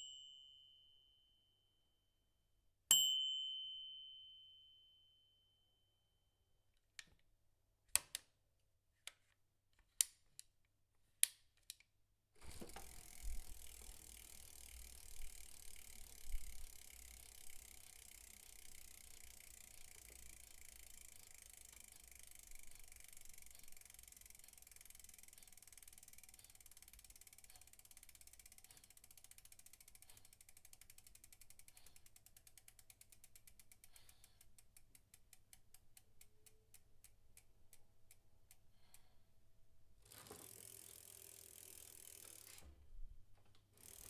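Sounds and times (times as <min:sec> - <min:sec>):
bicycle freewheel ticking: 0:12.4 - 0:39.1, 0:40.0 - 0:42.7, 0:43.6 - 0:44.0.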